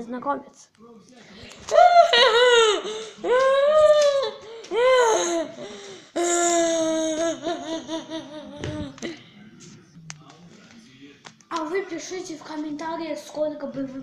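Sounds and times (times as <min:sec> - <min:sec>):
girl wailing wordlessly: 0:01.7 - 0:09.0.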